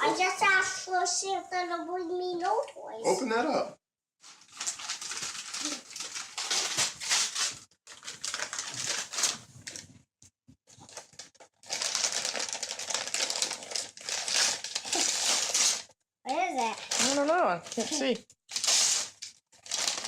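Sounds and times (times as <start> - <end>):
wrapping paper tearing and crinkling: 4.2 - 9.9, 10.7 - 20.0.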